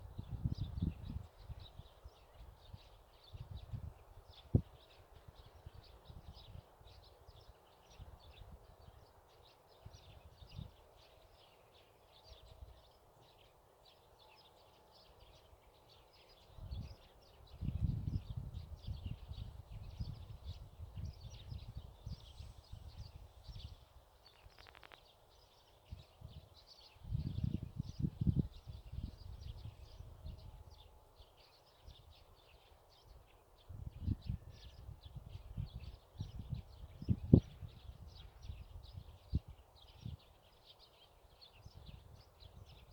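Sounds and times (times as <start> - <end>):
wind rumbling on microphone: 0.0 - 9.1, 16.5 - 25.0, 25.9 - 31.0, 33.1 - 40.4, 41.5 - 42.9
small birds chirping: 0.0 - 42.9.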